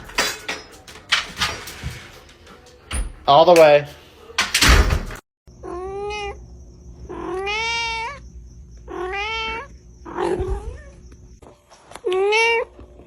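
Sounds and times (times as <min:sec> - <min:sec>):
cat meowing: 0:05.6 - 0:06.4, 0:07.1 - 0:08.2, 0:08.9 - 0:11.0, 0:12.0 - 0:12.7.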